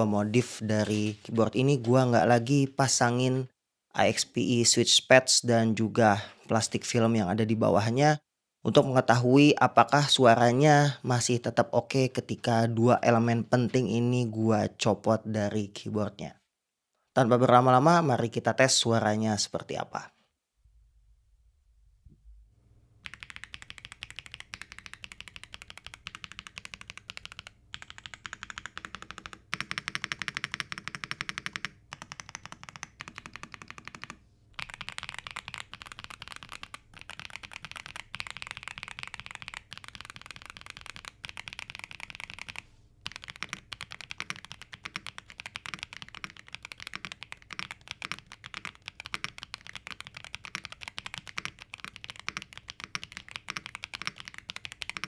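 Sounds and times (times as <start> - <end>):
fast typing on mechanical keyboard: 23.0 - 55.0.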